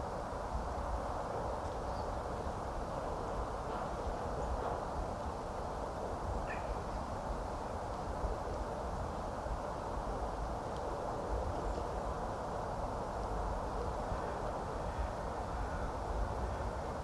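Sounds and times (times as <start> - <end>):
faint bird calls: 6.4 - 7.0.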